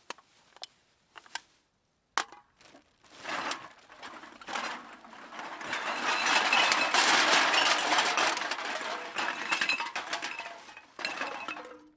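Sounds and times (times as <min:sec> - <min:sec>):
cans clattering together: 0:03.4 - 0:11.9.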